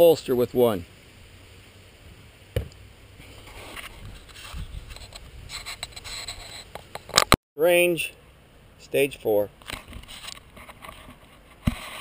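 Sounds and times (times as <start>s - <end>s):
faint scraping: 3.2s - 7.3s, 9.7s - 12.0s.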